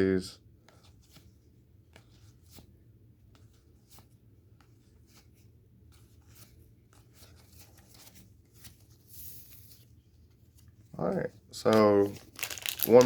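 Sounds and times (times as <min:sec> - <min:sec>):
low room hum: 0:00.0 - 0:13.0.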